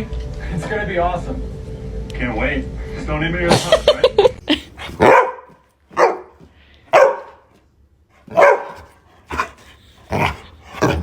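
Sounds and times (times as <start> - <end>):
dog barking: 5.0 - 7.5, 8.3 - 9.5.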